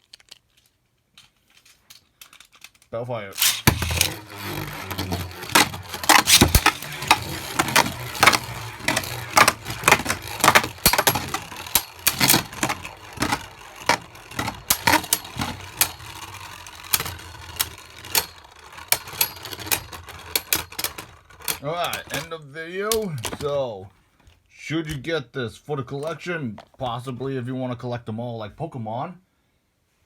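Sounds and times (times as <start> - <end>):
sharp plastic clicks and clacks: 1.6 - 23.6
spinning tops clashing: 3.4 - 22.3.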